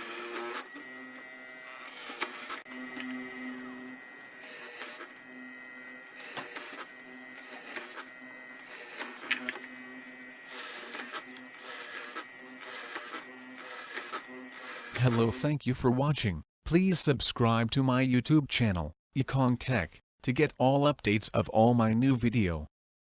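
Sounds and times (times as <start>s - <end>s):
drill press motor whirring: 0.0s - 15.5s.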